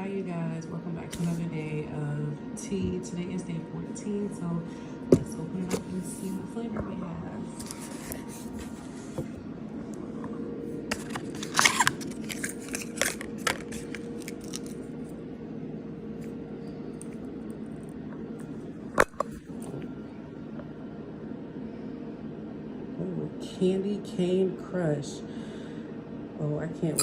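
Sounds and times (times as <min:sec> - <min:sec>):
steady low hum: 0:00.0 - 0:27.0
cardboard packaging crackling and tearing: 0:10.9 - 0:14.9.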